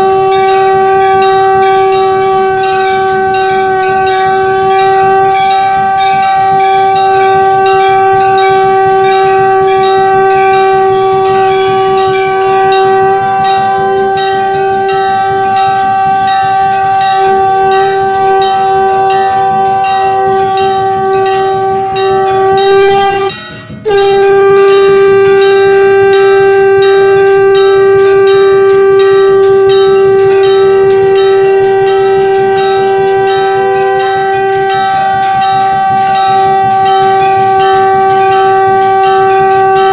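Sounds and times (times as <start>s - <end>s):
conch shell blown: 0.0s - 39.9s
temple bells ringing rapidly: 0.0s - 39.9s.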